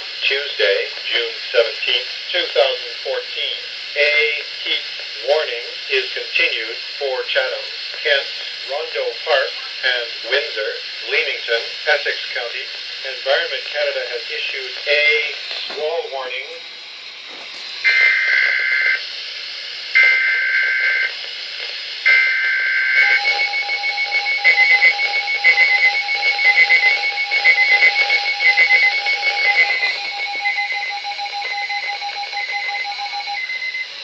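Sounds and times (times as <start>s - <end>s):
screeching digital data bursts: 16.2s - 19.0s
pulsing alarm tone: 16.3s - 19.0s, 22.1s - 34.0s.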